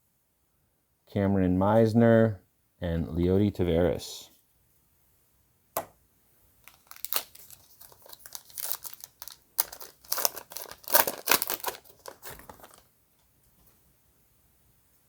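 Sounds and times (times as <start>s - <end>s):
wrapper tearing and crinkling: 6.6s - 12.9s.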